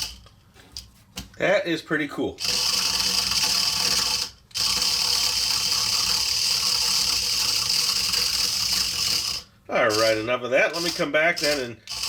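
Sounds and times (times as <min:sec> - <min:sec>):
small robot motor whirring: 0:02.4 - 0:12.0.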